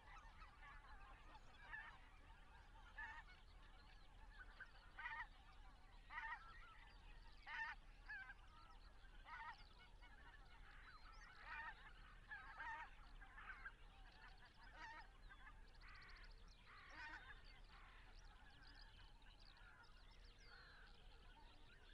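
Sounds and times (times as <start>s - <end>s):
geese honking in flight: 0.1s - 3.4s, 4.3s - 8.5s, 9.1s - 18.6s.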